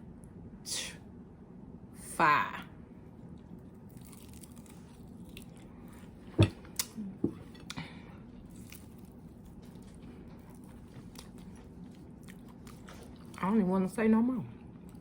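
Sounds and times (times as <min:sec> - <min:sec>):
person chewing food: 0:03.1 - 0:13.6, 0:14.6 - 0:15.0.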